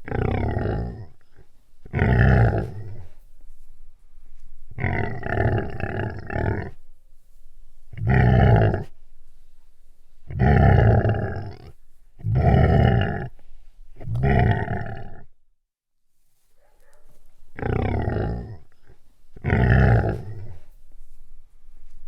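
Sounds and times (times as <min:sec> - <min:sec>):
deep rough animal growls: 0:00.0 - 0:03.2, 0:04.7 - 0:06.9, 0:07.9 - 0:09.0, 0:10.2 - 0:15.4, 0:17.6 - 0:20.7.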